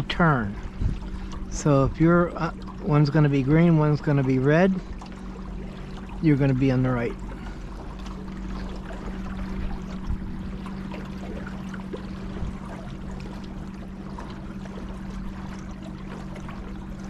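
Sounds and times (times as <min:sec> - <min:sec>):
river water trickling and splashing: 0:00.0 - 0:17.0
steady low hum: 0:00.0 - 0:17.0.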